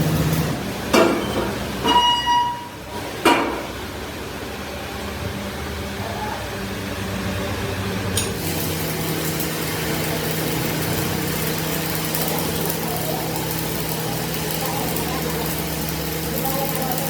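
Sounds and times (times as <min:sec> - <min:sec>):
machine humming: 0:06.6 - 0:17.0.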